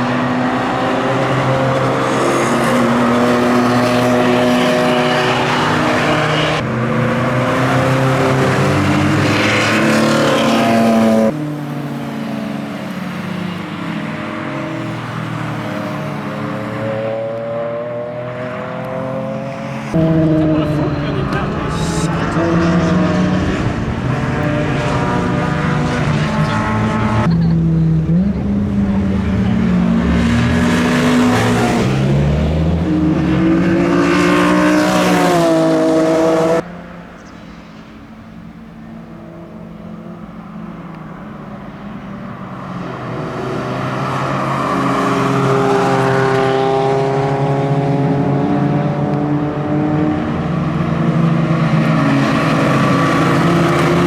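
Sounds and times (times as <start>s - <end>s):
car engine revving hard: 16.8s - 36.6s, 42.8s - 54.0s.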